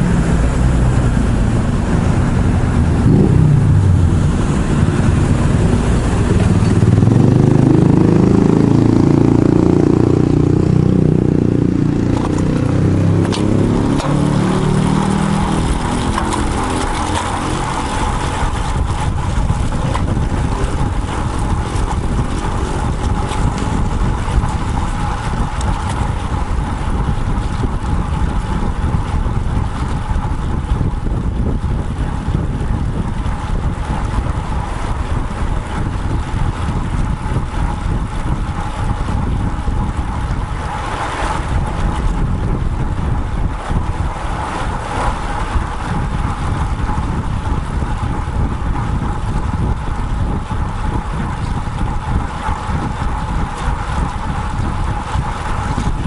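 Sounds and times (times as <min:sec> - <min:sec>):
wind buffeting microphone: 0:00.0 - 0:56.0.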